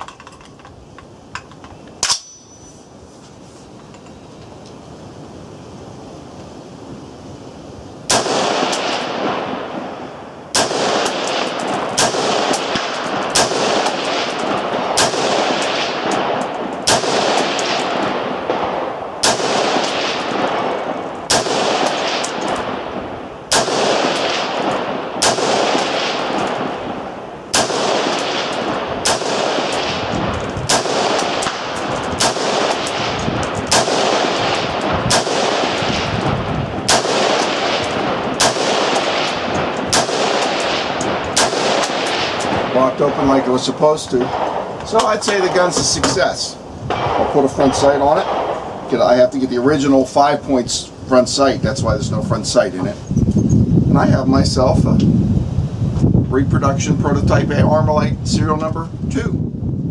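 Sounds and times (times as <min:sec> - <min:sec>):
rifle shots with rolling echo: 0:08.1 - 0:51.5.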